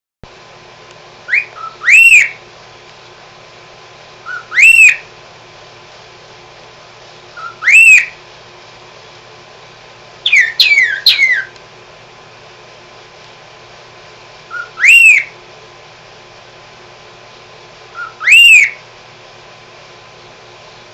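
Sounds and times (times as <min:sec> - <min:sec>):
cockatiel whistling: 0:01.3 - 0:02.4, 0:04.2 - 0:05.1, 0:07.4 - 0:08.2, 0:10.2 - 0:11.6, 0:14.5 - 0:15.4, 0:17.9 - 0:18.8.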